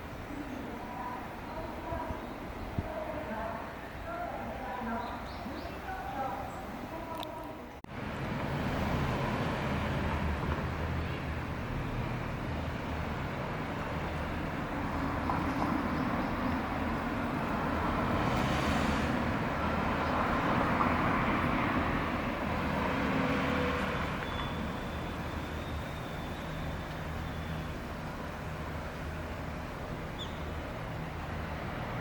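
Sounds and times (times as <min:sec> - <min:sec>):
vehicle rumble: 0:06.6 - 0:32.0.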